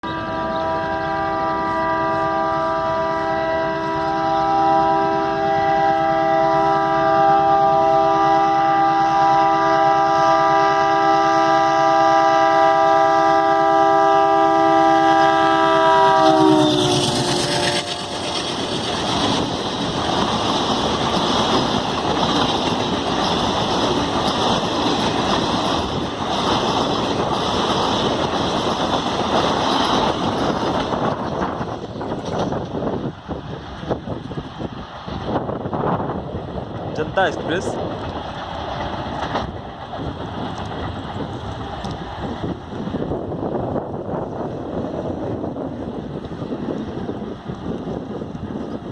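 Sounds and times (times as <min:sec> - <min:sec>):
locomotive air horn: 0:00.0 - 0:18.8
train rushing past: 0:00.0 - 0:48.9
wheels clacking on rail joints: 0:16.2 - 0:35.6, 0:36.4 - 0:48.9.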